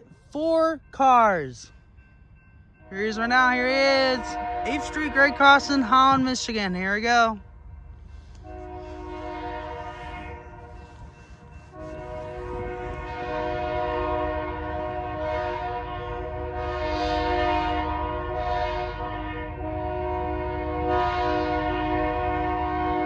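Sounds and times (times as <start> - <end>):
locomotive air horn: 4.2 - 6.2, 8.2 - 23.0.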